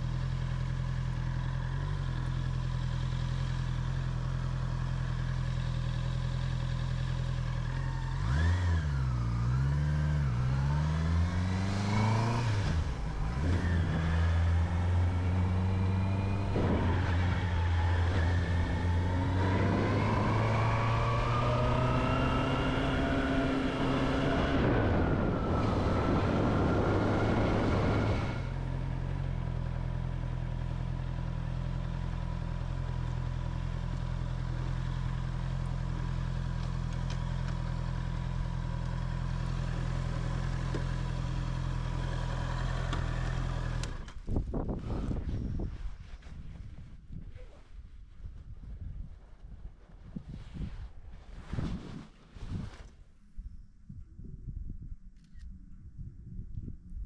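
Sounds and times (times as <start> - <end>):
motorcycle engine running: 0.0 - 21.0
engine revving and accelerating: 7.7 - 29.4.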